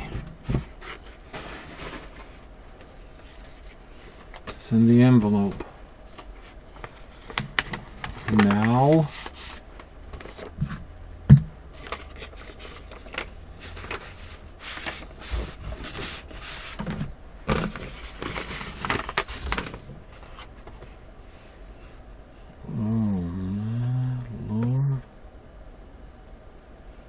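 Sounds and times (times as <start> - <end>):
paper packaging rustling: 0.4 - 4.6, 5.5 - 10.7, 11.7 - 21.0.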